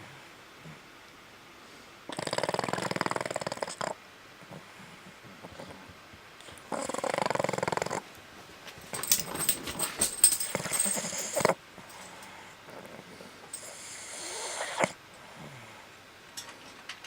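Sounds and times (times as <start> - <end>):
rustling and clicking: 8.6 - 12.3.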